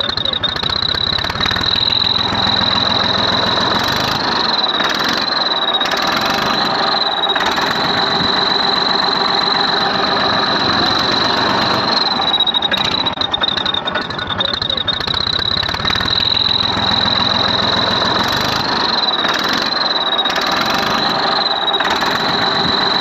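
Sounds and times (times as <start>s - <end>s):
high-pitched whistle: 0.0s - 23.0s
tractor diesel engine running: 0.0s - 23.0s.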